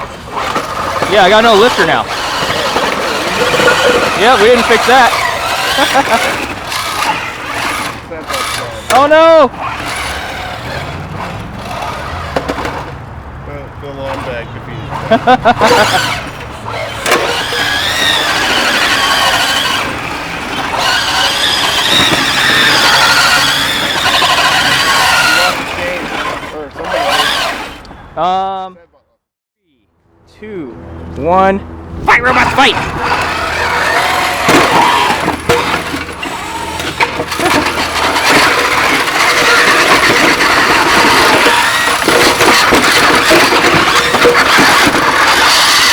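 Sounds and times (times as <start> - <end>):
electric motors whining: 0.0 - 13.0, 14.0 - 27.9, 32.2 - 45.9.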